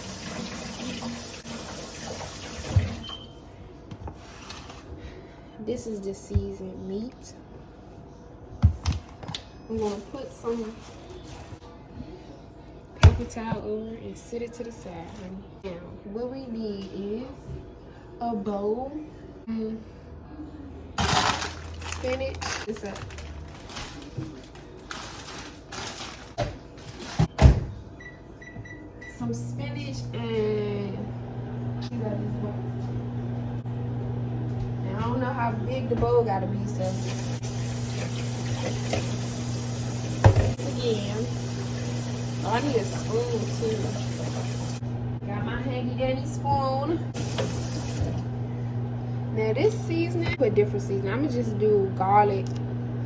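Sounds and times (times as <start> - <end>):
kitchen tap running: 0.0 - 3.2, 36.3 - 45.0, 46.2 - 48.4.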